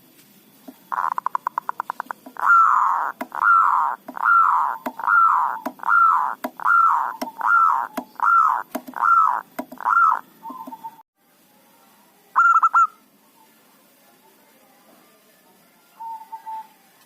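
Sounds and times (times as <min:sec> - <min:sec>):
dove cooing: 0:00.7 - 0:11.0.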